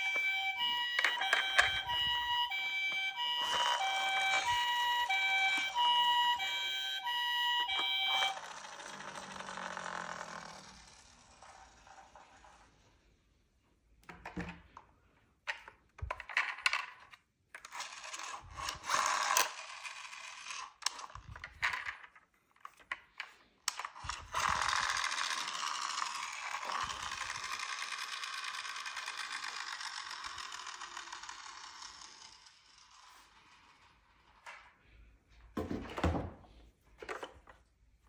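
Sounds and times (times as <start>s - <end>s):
toy car motor whirring: 0.0s - 13.2s, 17.6s - 34.8s.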